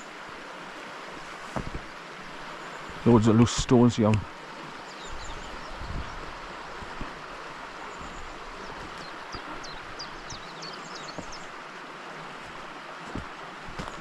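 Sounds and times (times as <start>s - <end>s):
stream rushing over boulders: 0.0s - 14.0s
footsteps on loose stones: 1.4s - 1.9s, 7.8s - 10.3s, 11.0s - 11.6s, 12.4s - 14.0s
small birds chirping: 1.7s - 11.6s.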